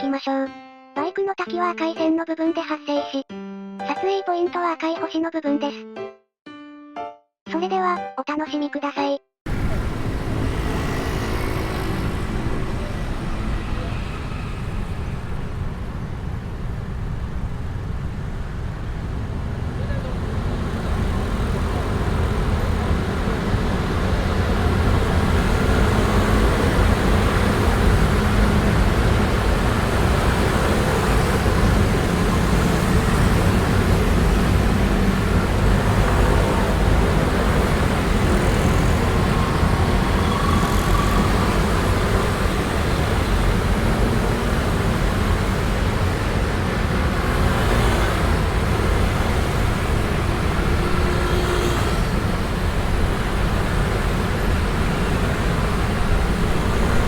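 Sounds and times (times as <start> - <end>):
motor scooters passing: 9.5 - 16.7, 18.9 - 57.0.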